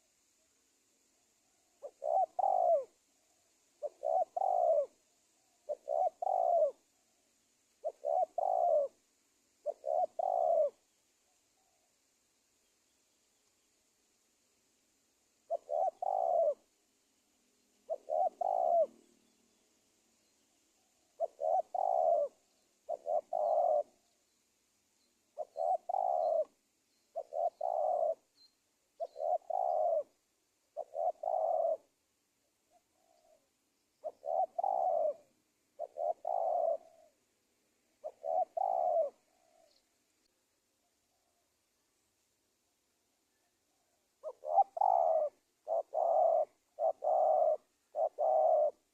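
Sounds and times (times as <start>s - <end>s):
dove cooing: 1.5s - 7.1s, 7.7s - 11.9s, 15.4s - 16.8s, 17.8s - 19.4s, 20.8s - 24.2s, 25.3s - 28.3s, 28.9s - 32.0s, 32.6s - 39.8s, 43.3s - 48.9s.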